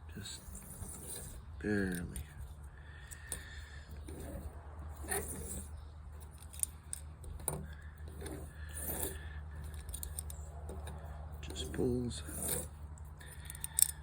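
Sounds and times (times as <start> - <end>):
steady low hum: 0.0 - 14.0
blade scraping on sharpening stone: 3.1 - 5.8, 7.8 - 14.0.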